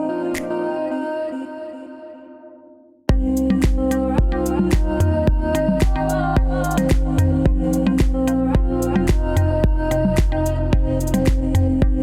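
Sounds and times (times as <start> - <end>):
music with sustained notes and beat: 3.1 - 12.0.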